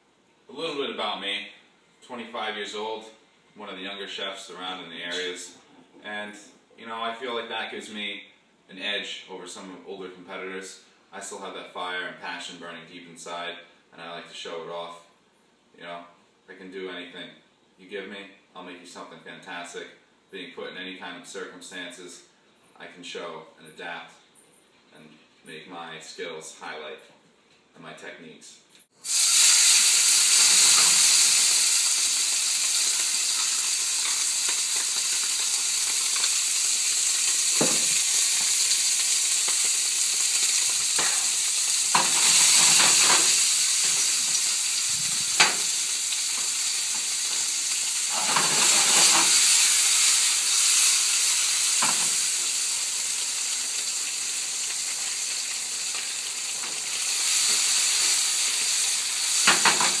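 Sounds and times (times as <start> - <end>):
food sizzling in a pan: 28.9 - 60.0
utensil knocking in a pan: 37.6 - 38.0.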